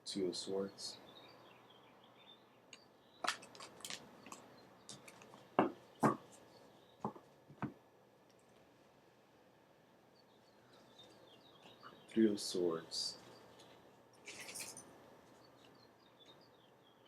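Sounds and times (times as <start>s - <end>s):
cards clicking and tapping: 3.2s - 6.2s.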